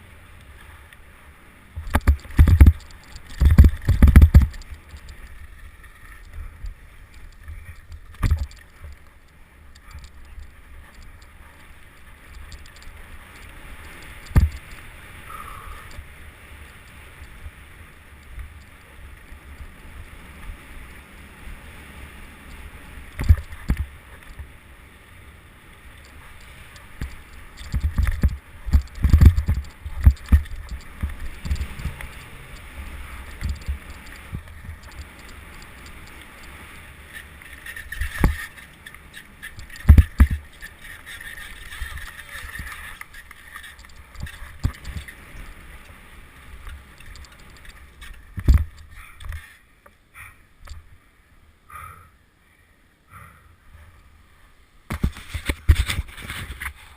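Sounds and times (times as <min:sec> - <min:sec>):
wind rumbling on microphone: 0:00.0 - 0:51.1, 0:53.1 - 0:56.9
bike knocks and rattles: 0:01.8 - 0:05.4, 0:07.4 - 0:08.9, 0:14.2 - 0:14.8, 0:26.9 - 0:32.6, 0:39.5 - 0:45.3.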